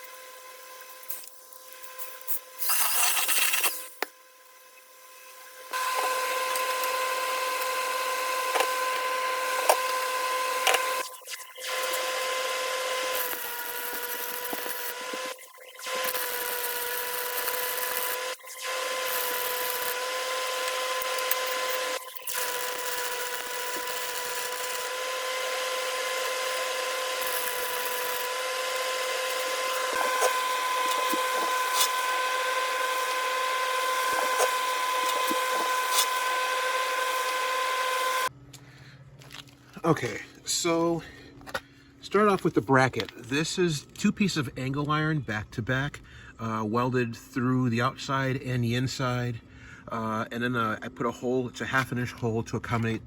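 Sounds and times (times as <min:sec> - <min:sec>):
power tool on steel: 0:00.0 - 0:38.3.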